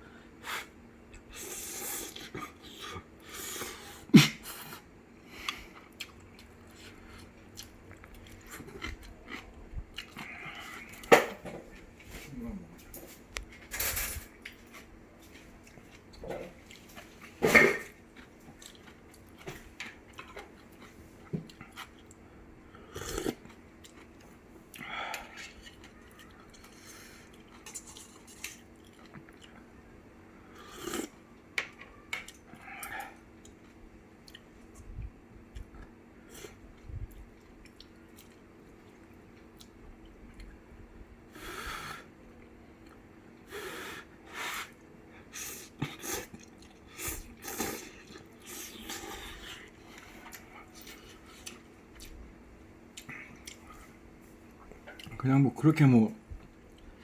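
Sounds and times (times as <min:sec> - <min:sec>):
chewing and slurping noodles: 0:00.6 - 0:11.1, 0:42.8 - 0:52.2.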